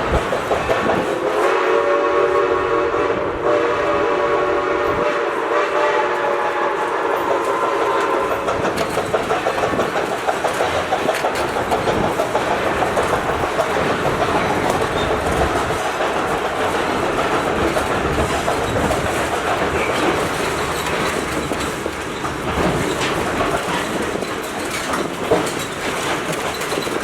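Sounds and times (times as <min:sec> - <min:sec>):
train wheels clattering over rail joints: 0:00.0 - 0:02.0, 0:05.4 - 0:27.0
train whistle blast: 0:01.2 - 0:08.5.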